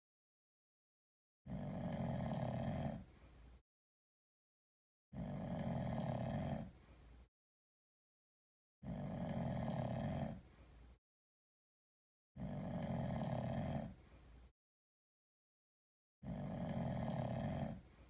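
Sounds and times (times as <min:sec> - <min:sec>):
cat snoring: 0:01.5 - 0:03.1, 0:05.2 - 0:06.7, 0:08.8 - 0:10.4, 0:12.4 - 0:14.0, 0:16.2 - 0:17.8.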